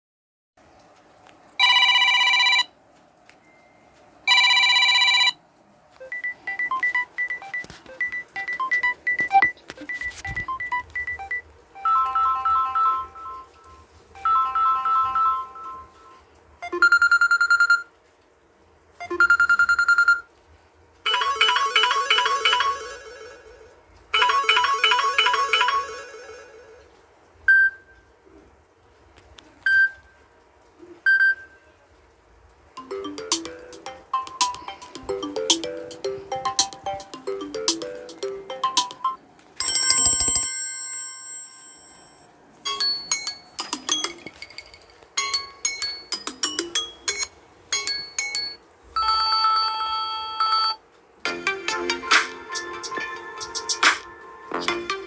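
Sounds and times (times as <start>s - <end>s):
phone ringtones: 1.6s - 2.7s, 3.4s - 5.4s, 6.0s - 17.9s, 19.0s - 20.3s, 21.1s - 26.9s, 32.8s - 50.8s.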